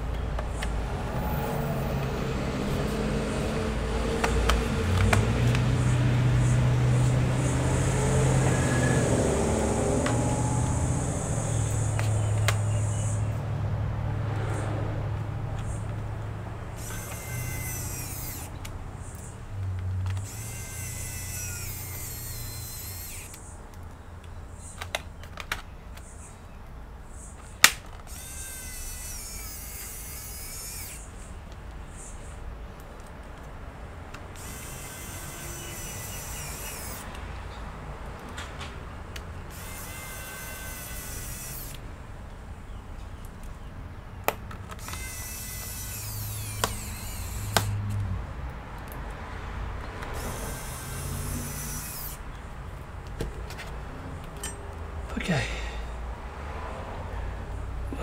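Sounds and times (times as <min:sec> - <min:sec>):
sharp clicks: 0:04.1 - 0:07.7, 0:10.0 - 0:13.2, 0:46.4 - 0:48.1
electric screwdriver motor hum: 0:16.8 - 0:19.3, 0:20.1 - 0:23.5, 0:28.1 - 0:31.1, 0:34.4 - 0:37.1, 0:39.5 - 0:41.8, 0:44.7 - 0:47.8, 0:50.1 - 0:52.2.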